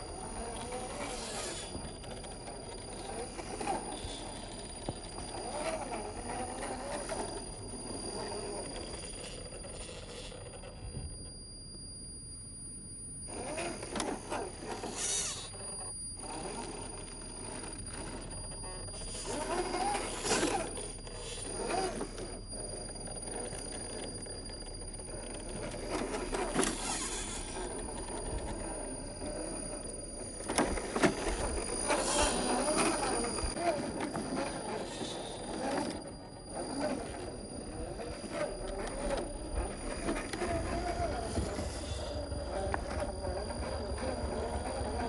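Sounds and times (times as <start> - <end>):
electric motor and gearbox whining: 0.0 - 45.0
tyres scrabbling on dirt and rock: 30.2 - 45.0.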